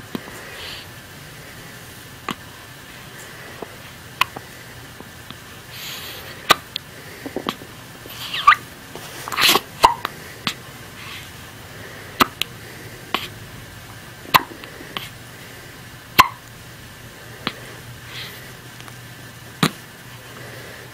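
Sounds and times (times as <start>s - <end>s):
person hiccuping: 9.4s - 10.1s, 14.3s - 14.7s, 16.2s - 16.4s.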